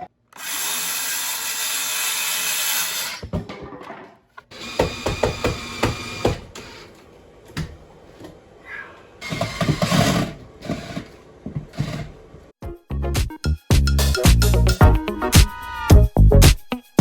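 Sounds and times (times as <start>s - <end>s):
power tool running: 0.3s - 3.2s, 4.5s - 6.9s.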